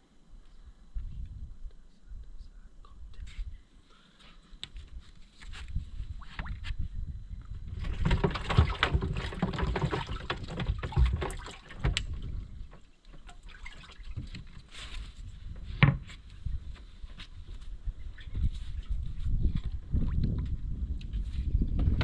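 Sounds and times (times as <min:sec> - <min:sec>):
water splashing around boat: 0:07.8 - 0:15.0.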